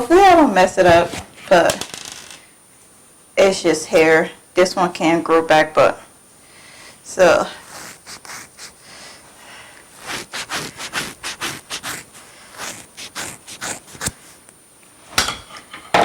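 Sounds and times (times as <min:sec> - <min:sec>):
scissors snipping hair: 0:10.0 - 0:14.2.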